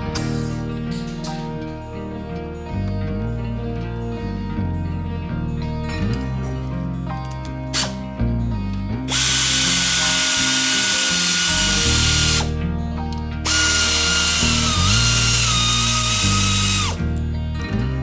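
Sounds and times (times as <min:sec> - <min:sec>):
background music: 0:00.0 - 0:18.0
power tool hissing and whining: 0:09.1 - 0:12.5, 0:13.5 - 0:17.0.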